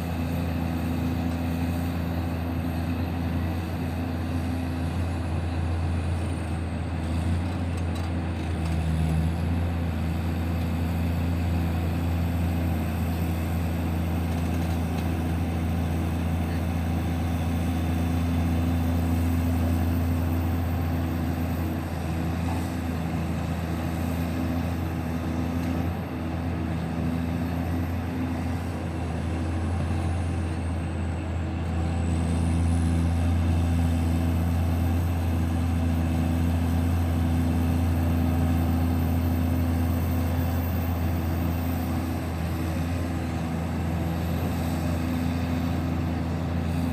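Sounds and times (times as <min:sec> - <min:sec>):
diesel engine humming: 0:15.2 - 0:46.9.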